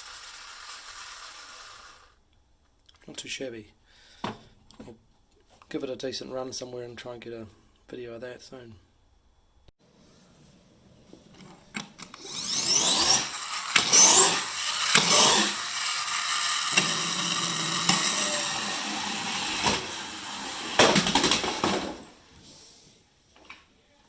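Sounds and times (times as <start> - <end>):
toy car friction motor whirring: 0.0 - 2.2, 11.8 - 21.8.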